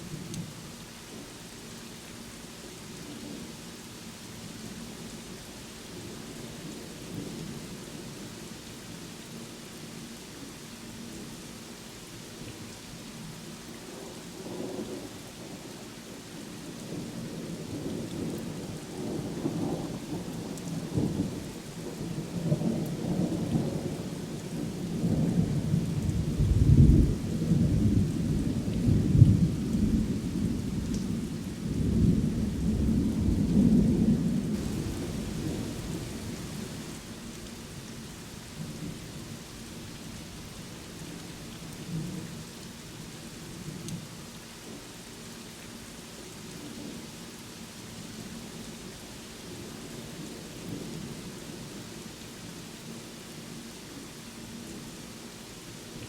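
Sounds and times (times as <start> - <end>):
steady rain: 0.0 - 56.0
thunder rumbling: 31.8 - 37.2.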